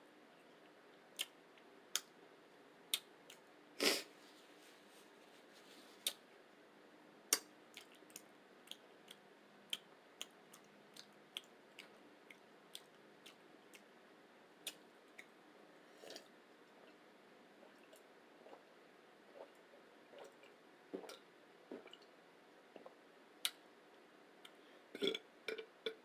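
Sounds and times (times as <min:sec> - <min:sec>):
chewing mouth clicks and smacks: 0:07.3 - 0:13.9.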